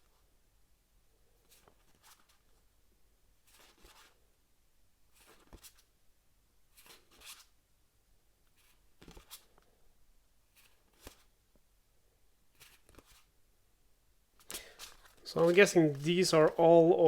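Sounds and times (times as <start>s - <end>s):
cards sliding and tapping: 5.2s - 5.8s, 6.8s - 7.5s, 8.6s - 9.7s, 10.5s - 11.3s, 12.6s - 13.3s, 14.4s - 16.0s.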